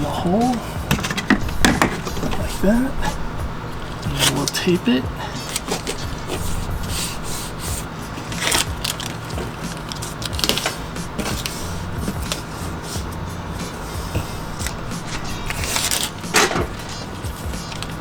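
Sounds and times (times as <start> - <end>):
hand rubbing tape down: 0.0 - 18.0
tape ripped off roll: 5.2 - 18.0.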